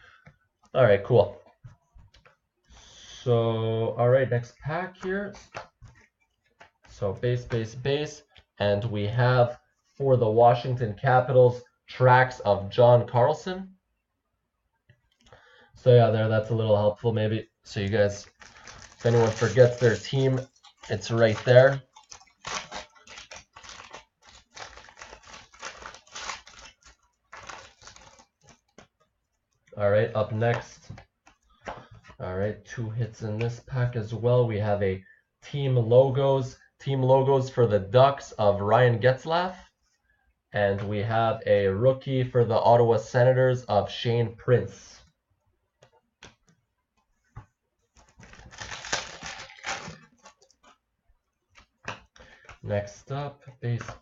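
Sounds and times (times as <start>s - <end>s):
card pack wrapper crinkling: 17.8s - 28.9s, 48.0s - 50.8s.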